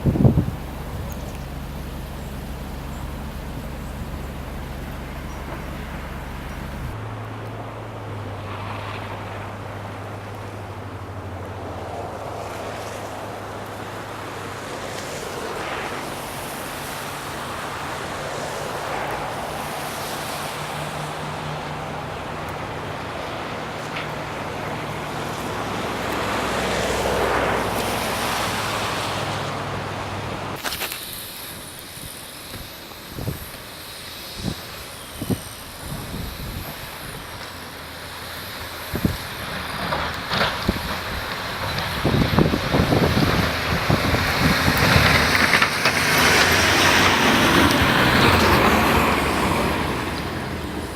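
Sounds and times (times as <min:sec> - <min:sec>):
wind rushing: 0:00.0 - 0:01.8
steady hiss: 0:00.0 - 0:10.8, 0:12.4 - 0:50.9
low vehicle engine hum: 0:00.0 - 0:50.9.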